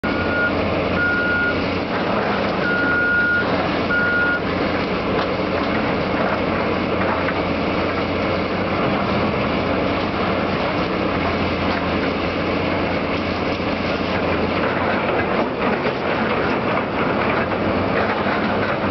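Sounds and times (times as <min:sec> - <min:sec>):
backup alarm beeping: 0:00.0 - 0:01.6, 0:02.6 - 0:04.4
diesel machinery running: 0:00.0 - 0:18.9.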